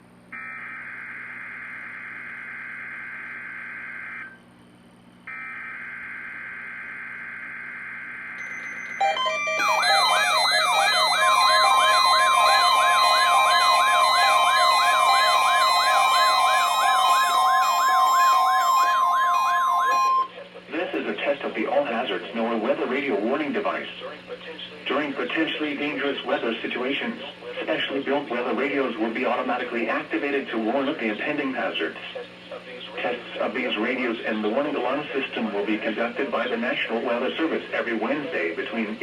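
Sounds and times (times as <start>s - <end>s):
steady warning alarm tone: 0.3s - 4.4s, 5.3s - 20.4s
siren wails: 5.3s - 20.4s.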